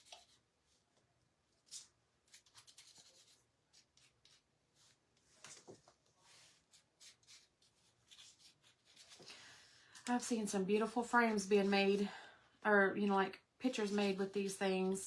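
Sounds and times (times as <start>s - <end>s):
rubbing and scratching on wood: 1.6s - 9.3s.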